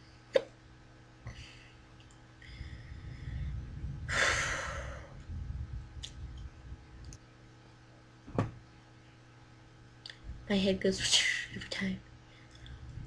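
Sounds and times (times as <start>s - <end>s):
low rumble: 2.2s - 8.8s, 10.1s - 11.0s, 12.0s - 13.0s.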